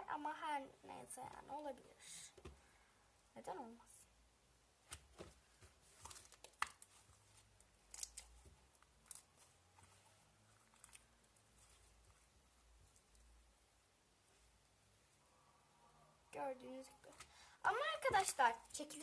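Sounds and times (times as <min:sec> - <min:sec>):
slime crackling and popping: 0:07.8 - 0:09.3.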